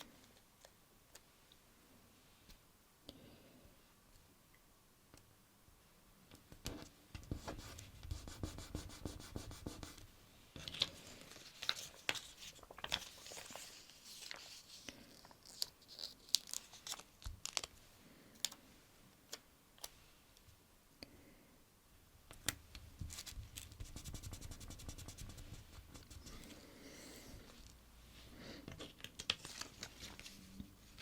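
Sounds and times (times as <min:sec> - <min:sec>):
fingers scratching paper: 0:07.3 - 0:10.0, 0:23.8 - 0:26.2.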